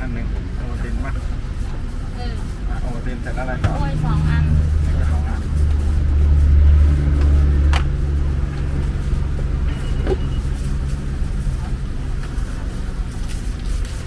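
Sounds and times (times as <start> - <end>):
motor rumbling: 0.0 - 14.0
high beep: 9.7 - 10.4.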